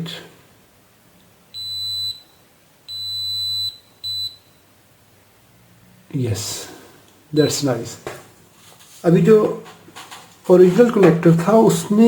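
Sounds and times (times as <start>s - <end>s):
multimeter high beeps: 1.5s - 4.7s, 7.4s - 7.7s.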